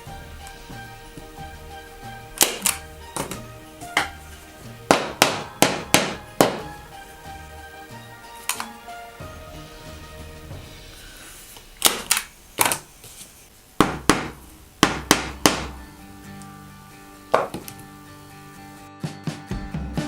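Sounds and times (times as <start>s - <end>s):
background music: 0.0s - 12.6s, 14.1s - 20.0s
sharp knocks: 4.8s - 7.0s, 13.8s - 15.9s, 17.3s - 17.8s.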